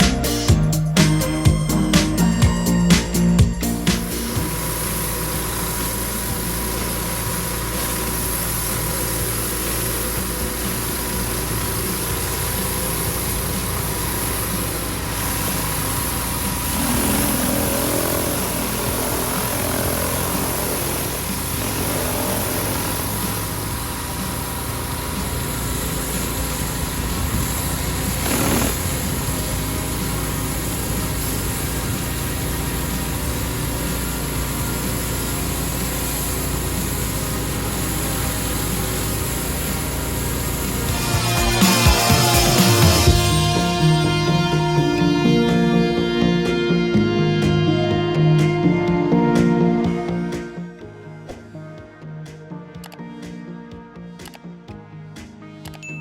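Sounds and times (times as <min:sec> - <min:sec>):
pressure washer motor drone: 0:00.0 - 0:50.8
pressure washer spray hiss: 0:03.9 - 0:43.1.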